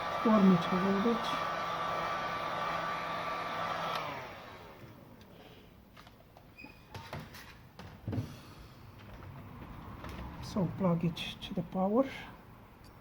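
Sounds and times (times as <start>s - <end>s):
hot air blower hissing: 0.0s - 4.9s.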